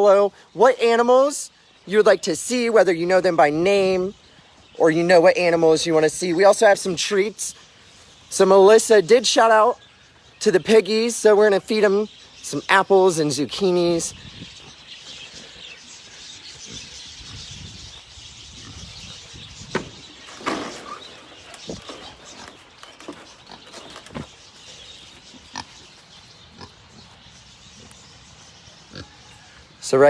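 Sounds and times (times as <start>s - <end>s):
pigs grunting: 24.9s - 25.9s, 26.5s - 27.1s, 28.8s - 29.3s.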